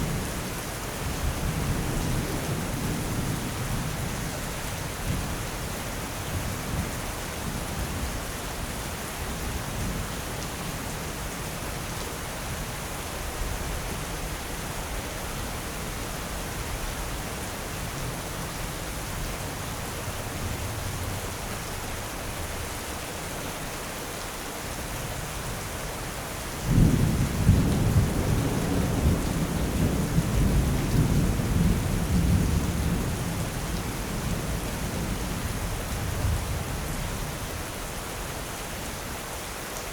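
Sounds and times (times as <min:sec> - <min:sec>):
heavy rain: 0:00.0 - 0:39.9
thunder rumbling: 0:26.7 - 0:33.6.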